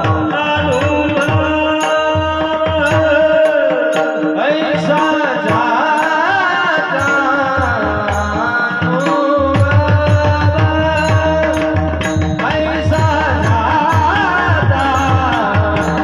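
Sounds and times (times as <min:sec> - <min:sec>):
hand drum: 0:00.0 - 0:16.0
harmonium tones: 0:00.0 - 0:16.0
person singing: 0:00.0 - 0:16.0.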